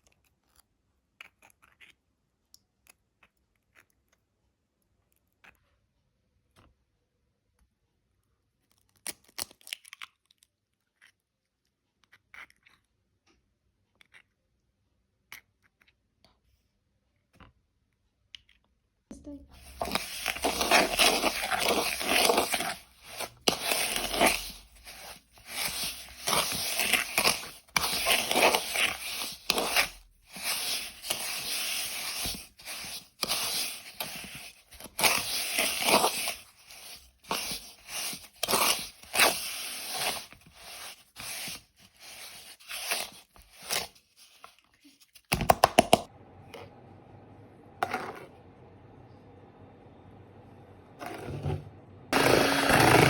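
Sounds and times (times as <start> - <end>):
utensil scraping and beating bowl: 19.6 - 46.0, 51.0 - 53.0.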